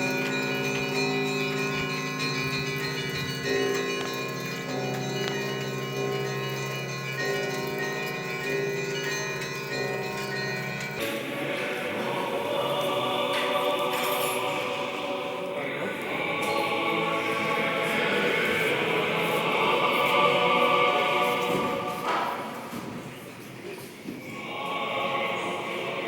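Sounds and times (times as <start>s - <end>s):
bells ringing: 0.0s - 15.5s, 16.1s - 22.3s
choir singing chant: 11.0s - 23.1s, 24.0s - 26.0s.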